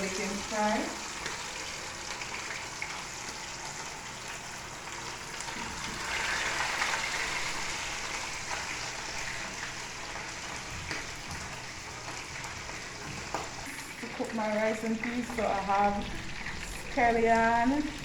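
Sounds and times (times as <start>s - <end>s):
fish sizzling in a pan: 0.0s - 18.0s.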